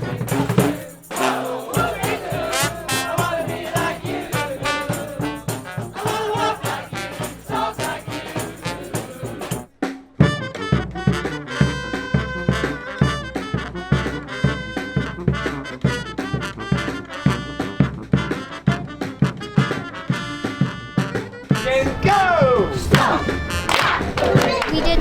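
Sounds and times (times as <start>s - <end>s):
steady drum beat: 0.0s - 11.4s, 21.6s - 25.0s
brass band horns: 0.0s - 25.0s.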